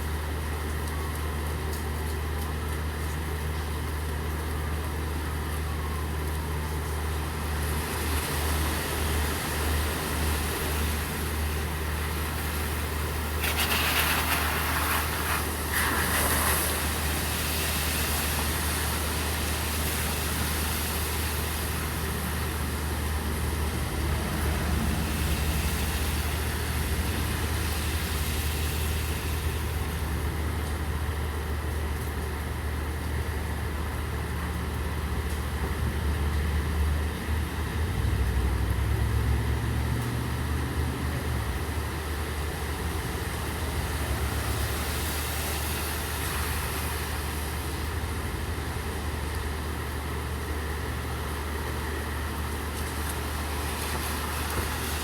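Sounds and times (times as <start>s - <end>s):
rain hissing: 7.4s - 31.9s, 41.8s - 55.0s
rushing hiss: 12.2s - 21.6s.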